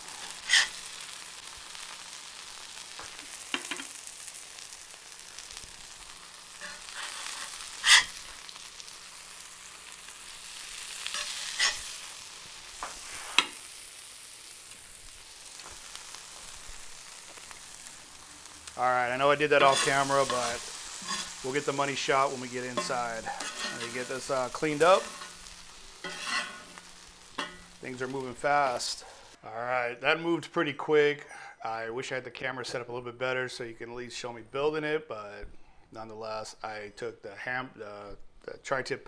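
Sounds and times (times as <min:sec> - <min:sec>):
food sizzling on a grill: 0:00.0 - 0:29.4.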